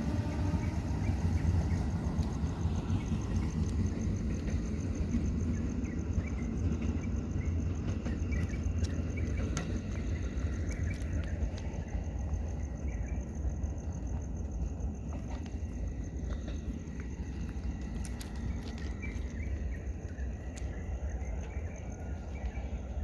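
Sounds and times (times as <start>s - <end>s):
low rumble of traffic: 0.0s - 23.0s.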